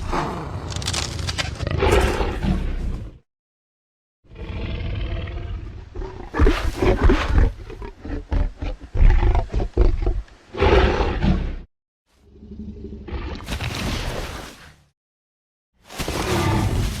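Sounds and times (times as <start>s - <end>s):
dinosaur growling: 4.3s - 11.6s.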